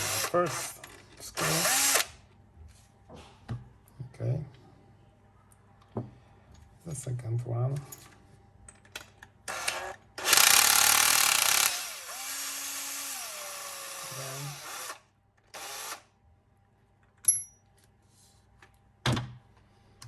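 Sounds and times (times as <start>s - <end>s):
electric screwdriver running: 0.0s - 0.7s, 1.4s - 2.1s, 9.5s - 15.0s, 15.6s - 16.0s.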